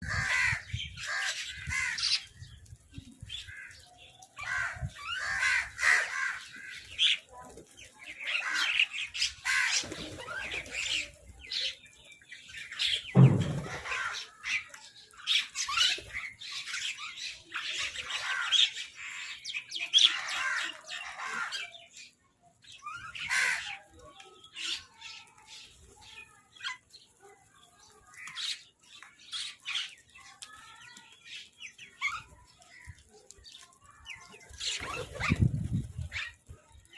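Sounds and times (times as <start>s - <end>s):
crows cawing and squawking: 0.0s - 2.4s, 3.2s - 7.3s, 8.1s - 11.2s, 13.2s - 16.2s, 17.7s - 19.4s, 20.0s - 21.9s, 23.0s - 24.0s
loud thump: 13.2s - 13.9s.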